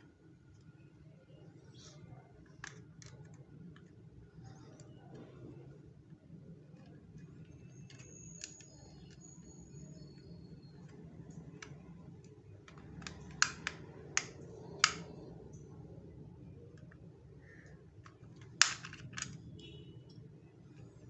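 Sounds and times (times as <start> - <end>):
plastic toy parts clicking: 2.4 - 4.9, 7.5 - 9.3, 10.8 - 15.6, 16.7 - 19.5
plastic snaps: 11.5 - 15.3.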